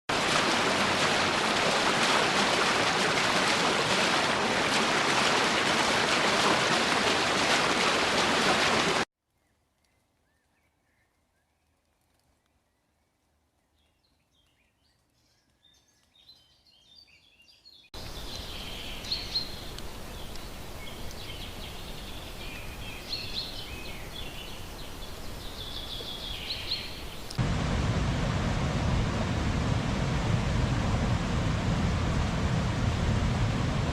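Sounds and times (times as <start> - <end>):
birds chirping: 13.6 - 27.4
deep rushing noise: 27.4 - 33.9
loud steady rushing noise: 27.4 - 33.9.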